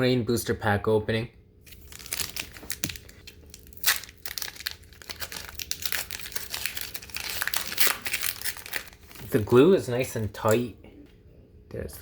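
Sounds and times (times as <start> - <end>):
foil pack crinkling and tearing: 1.6 - 9.5.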